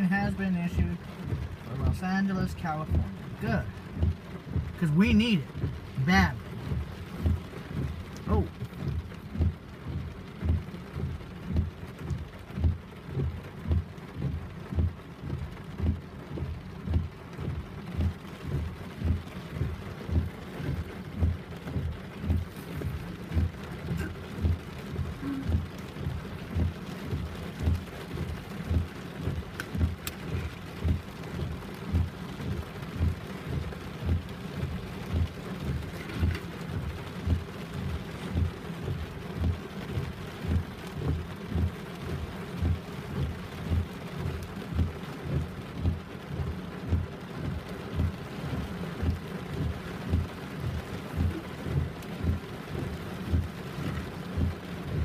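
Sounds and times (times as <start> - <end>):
heavy rain falling: 0.0 - 55.0
regular low thump: 0.0 - 55.0.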